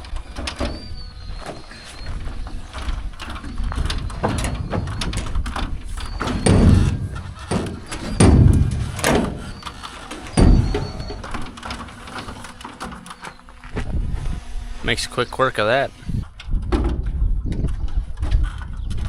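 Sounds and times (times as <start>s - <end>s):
clanks and knocks: 0.0s - 14.5s, 15.9s - 19.0s
heavy thuds: 1.3s - 14.8s.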